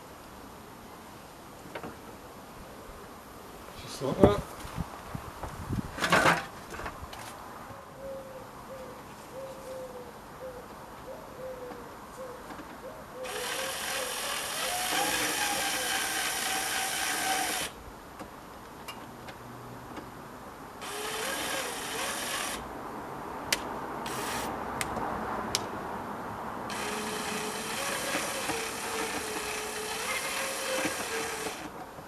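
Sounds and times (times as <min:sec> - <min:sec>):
cordless drill driving screw: 0:13.2 - 0:17.7, 0:20.8 - 0:22.6, 0:24.1 - 0:24.5, 0:26.7 - 0:31.7.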